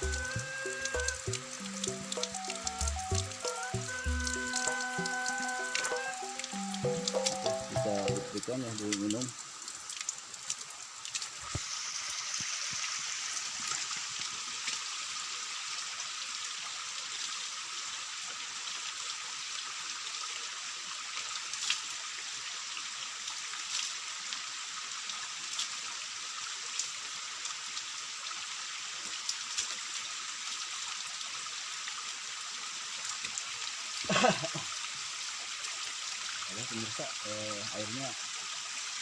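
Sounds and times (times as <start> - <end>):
spring water trickling: 0.0 - 16.6, 20.6 - 39.0.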